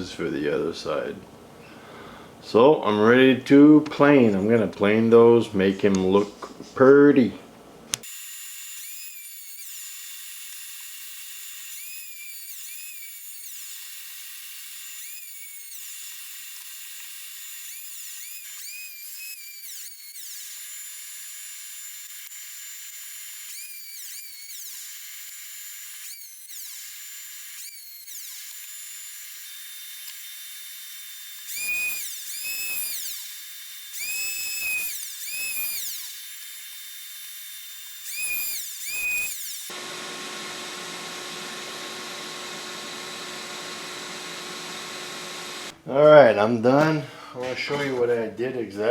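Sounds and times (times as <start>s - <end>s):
electric hand planer whining: 21.6s - 45.8s.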